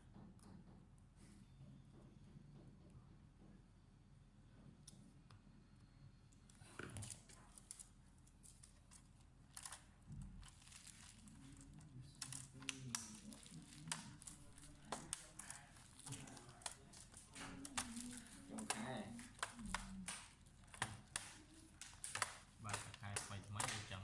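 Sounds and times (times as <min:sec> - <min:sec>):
clicks and crinkling: 0:06.5 - 0:24.0.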